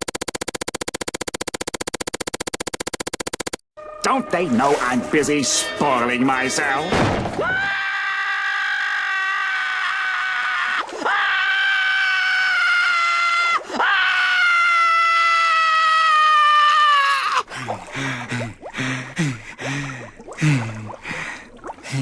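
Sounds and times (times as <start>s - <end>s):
long high-pitched scream: 7.4s - 17.4s.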